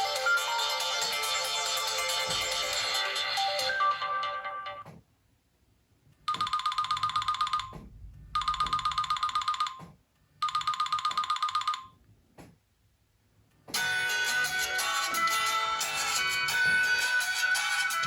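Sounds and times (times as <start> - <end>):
electronic ringtone trill: 0.0 - 4.8, 13.8 - 18.0.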